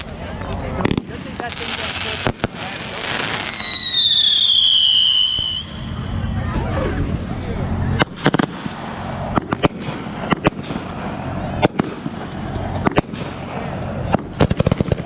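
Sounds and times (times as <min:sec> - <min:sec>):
fireworks bangs: 0:06.5 - 0:15.0.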